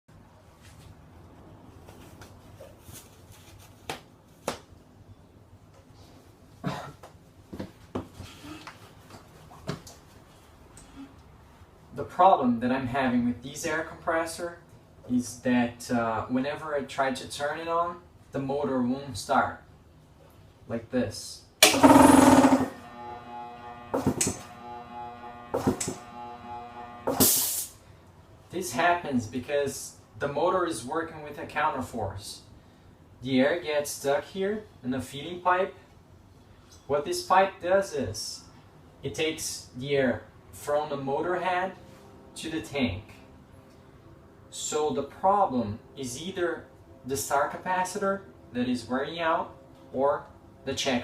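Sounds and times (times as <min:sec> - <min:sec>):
faint low hum: 0:21.8 - 0:27.2
air hiss: 0:27.1 - 0:27.8.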